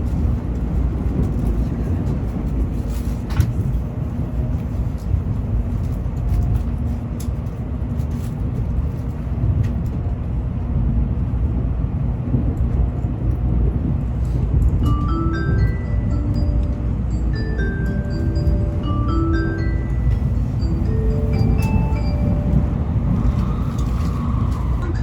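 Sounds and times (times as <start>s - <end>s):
train cabin rumble: 0.0s - 25.0s
bell-like announcement chime: 14.9s - 22.8s.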